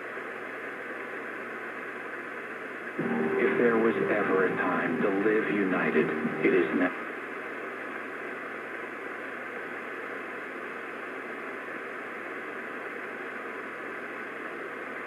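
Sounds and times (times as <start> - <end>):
radio static hiss: 0.0 - 15.0.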